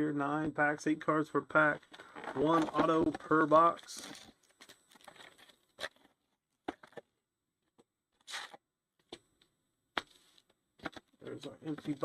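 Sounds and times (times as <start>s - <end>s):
card packs rustling: 1.8s - 7.0s, 10.0s - 12.0s.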